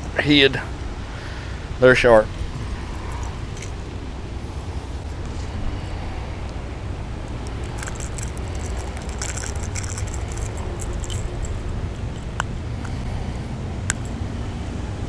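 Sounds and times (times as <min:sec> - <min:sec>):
low rumble: 0:00.0 - 0:15.0
metallic jingling and clicking: 0:07.3 - 0:12.5.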